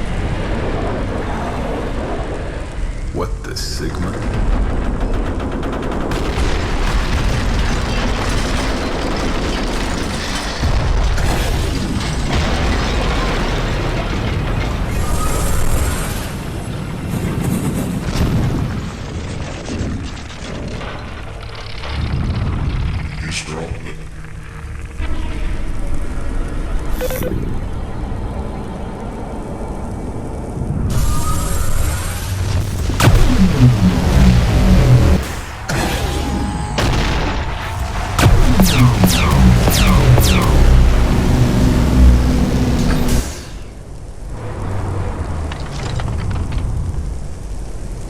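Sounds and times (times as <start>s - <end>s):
rumbling explosions: 0.0s - 48.0s
sharp crack: 32.6s - 44.1s
pulsing bass: 32.8s - 37.0s, 37.7s - 43.3s
falling synth sweep: 32.8s - 43.8s
electronic dance music: 33.0s - 35.4s, 38.1s - 42.2s.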